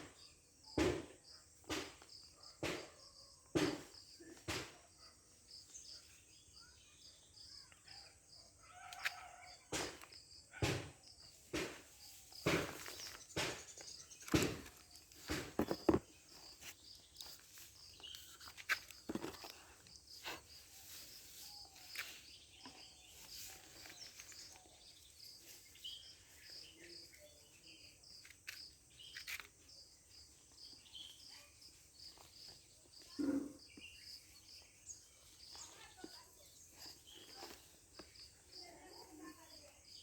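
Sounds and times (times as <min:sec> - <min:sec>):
insects chirping: 0:00.0 - 0:40.0
phone box being handled: 0:14.3 - 0:16.1, 0:18.7 - 0:19.7.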